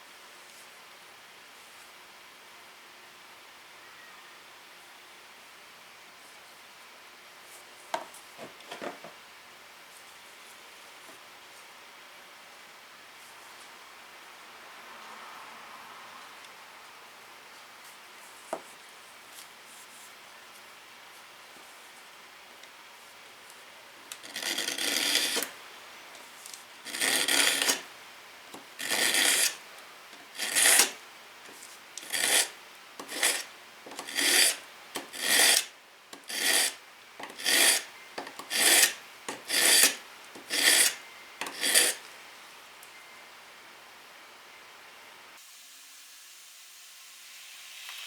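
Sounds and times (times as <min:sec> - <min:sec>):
abrasive tool stroking steel blade: 0:24.2 - 0:25.5, 0:26.9 - 0:27.9, 0:28.8 - 0:29.6, 0:30.2 - 0:31.0, 0:32.0 - 0:42.1.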